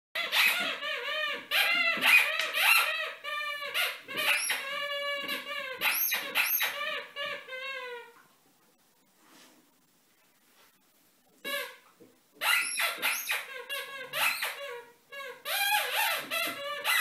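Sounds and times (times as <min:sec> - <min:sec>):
squeaky toy squeaking: 0:00.2 - 0:08.1, 0:11.4 - 0:11.8, 0:12.4 - 0:17.0.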